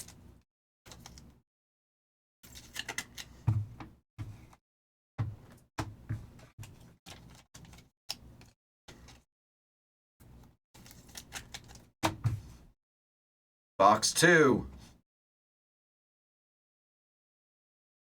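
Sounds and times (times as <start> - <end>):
cards and packaging handled: 0.9 - 1.4, 2.5 - 3.6, 6.3 - 9.2, 10.8 - 11.9.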